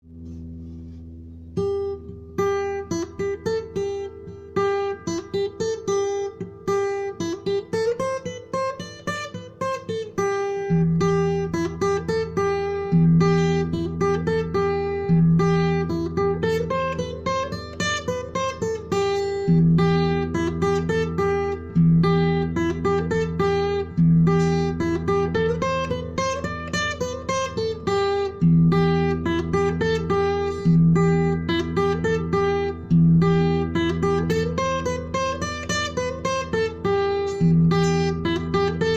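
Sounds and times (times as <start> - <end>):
acoustic guitar melody: 0.0 - 38.9.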